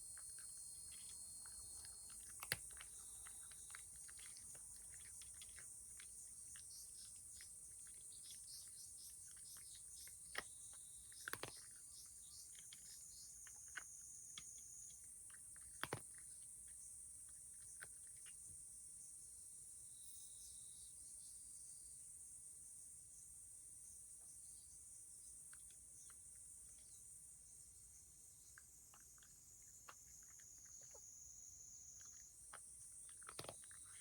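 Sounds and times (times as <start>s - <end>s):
cat eating clicks: 0.0s - 18.4s, 31.9s - 34.0s.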